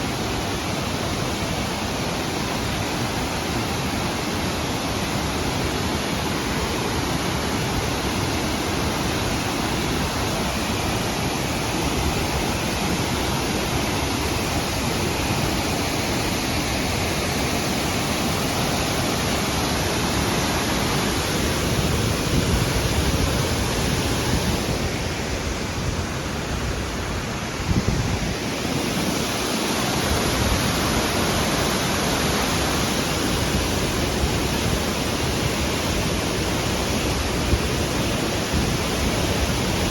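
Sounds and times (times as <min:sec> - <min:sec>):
waterfall rushing: 0:00.0 - 0:39.9.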